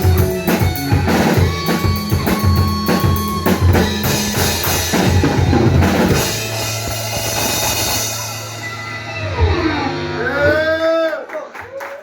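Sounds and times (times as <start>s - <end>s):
drum kit hits: 0.0s - 10.6s
live rock band playing: 0.0s - 10.8s.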